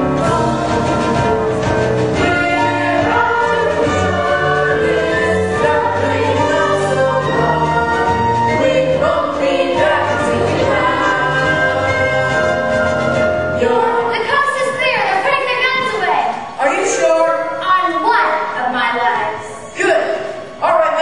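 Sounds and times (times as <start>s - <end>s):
choir singing sustained notes: 0.0s - 14.3s.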